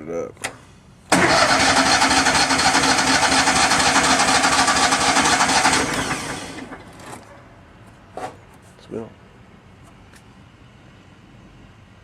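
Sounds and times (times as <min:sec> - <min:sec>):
electric starter cranking engine: 0:01.1 - 0:06.9.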